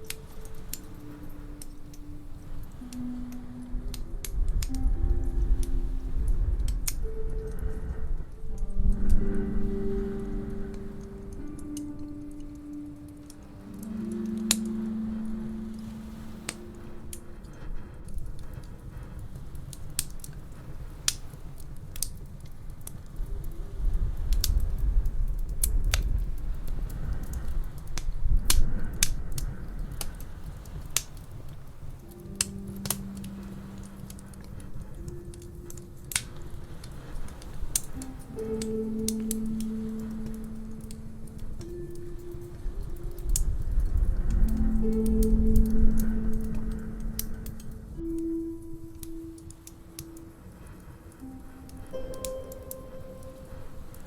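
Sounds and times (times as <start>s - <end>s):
low rumble: 0.0s - 19.9s, 37.6s - 54.0s
soft held musical tones: 0.0s - 54.0s
wood fire crackling: 0.0s - 54.0s.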